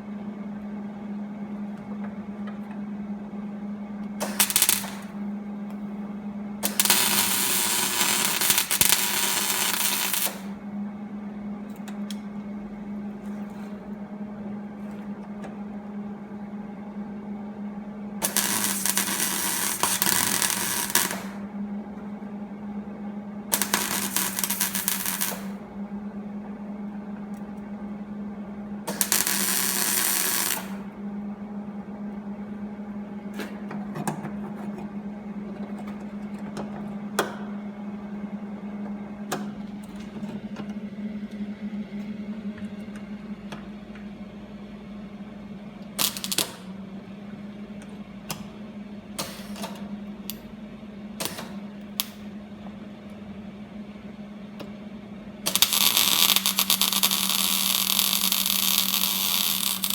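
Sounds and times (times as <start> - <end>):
crackling welding arc: 4.2 - 5.1, 6.6 - 10.5, 18.2 - 21.4, 23.5 - 25.6, 28.9 - 30.8, 46.0 - 46.7, 55.5 - 59.9
welder hum: 4.2 - 5.9, 6.6 - 10.6, 18.2 - 21.5, 23.5 - 25.6, 28.8 - 31.0, 45.8 - 46.8, 55.4 - 59.9.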